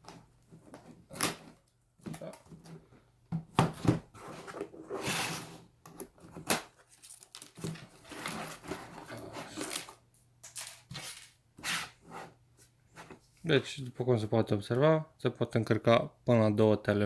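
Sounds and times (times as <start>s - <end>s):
cardboard and plastic crinkling: 6.1s - 10.0s.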